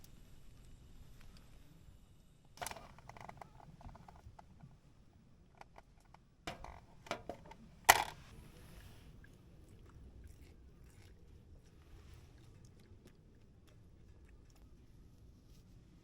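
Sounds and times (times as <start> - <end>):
camp tableware clicking and knocking: 2.6 - 4.5, 6.5 - 8.2.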